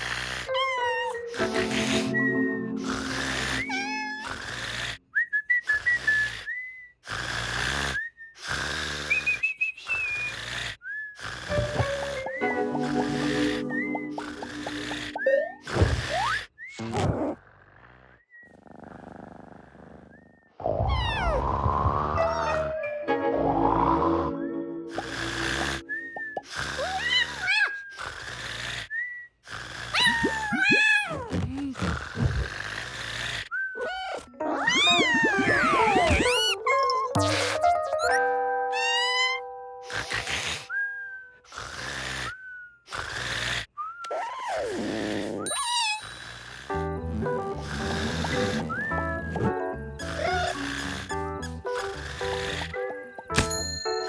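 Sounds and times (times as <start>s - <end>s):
cartoon snoring with whistles: 0.0s - 22.6s, 23.4s - 38.2s, 39.8s - 53.5s
sliding whistle tones: 48.7s - 49.4s.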